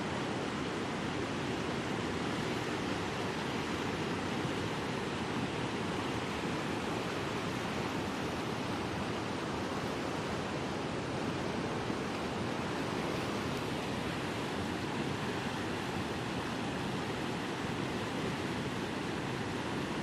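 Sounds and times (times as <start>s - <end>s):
rushing water: 0.0s - 20.0s.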